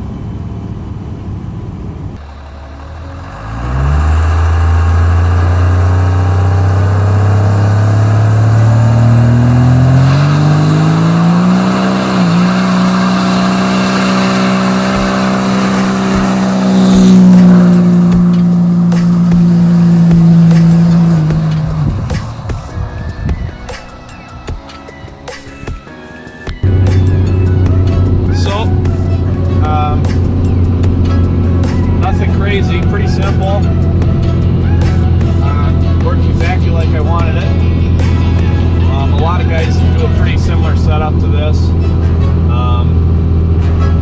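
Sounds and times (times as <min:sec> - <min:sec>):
diesel engine revving: 0:00.0 - 0:44.0.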